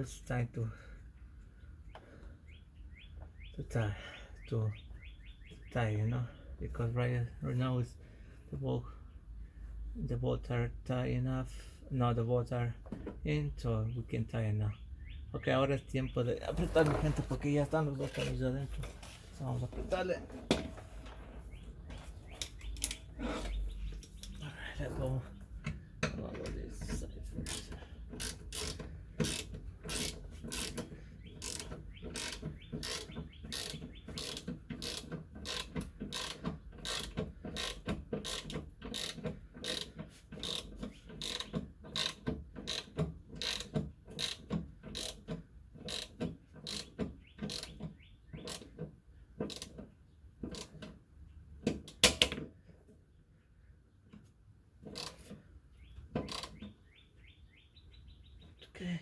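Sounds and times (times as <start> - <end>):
ratchet wrench clicking: 27.4 - 47.8, 56.2 - 56.6.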